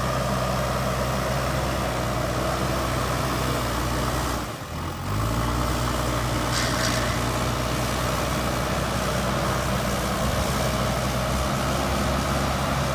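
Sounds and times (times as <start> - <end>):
diesel engine running: 0.0 - 12.9
short hiss: 6.4 - 7.7.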